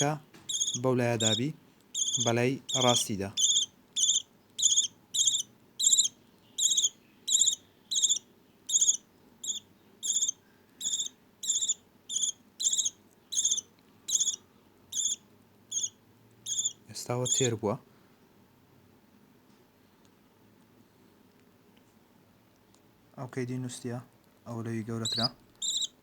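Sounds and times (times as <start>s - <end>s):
budgie chick chirping: 0.0s - 17.6s, 24.9s - 26.0s.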